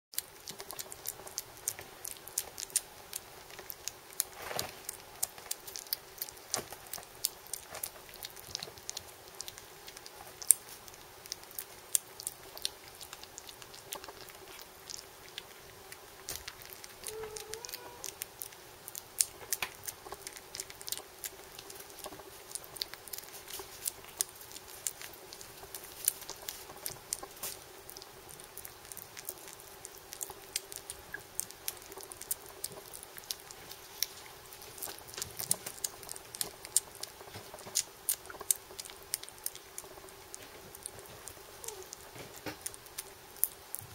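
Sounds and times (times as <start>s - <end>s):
kitten chewing food: 0.1s - 43.9s
kitten squeak: 17.0s - 18.1s.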